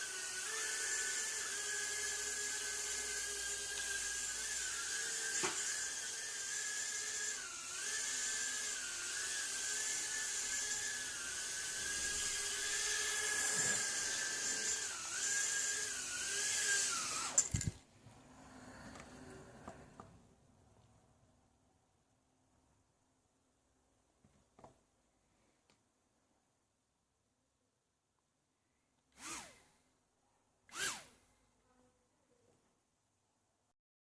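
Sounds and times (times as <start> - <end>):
quadcopter motors whining: 0.0 - 17.8, 29.2 - 29.6, 30.7 - 31.1.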